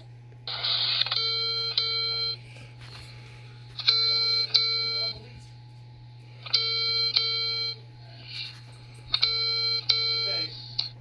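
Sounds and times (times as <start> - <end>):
electronic warning beeps: 0.5 - 2.4, 3.8 - 5.3, 6.4 - 8.5, 9.1 - 11.0.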